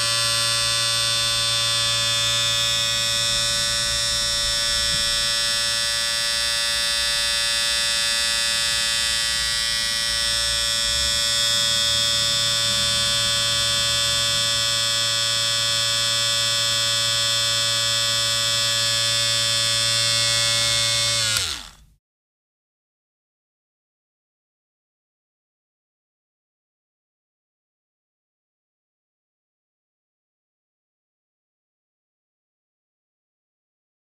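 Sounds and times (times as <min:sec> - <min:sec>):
electric shaver buzzing: 0:00.0 - 0:21.9.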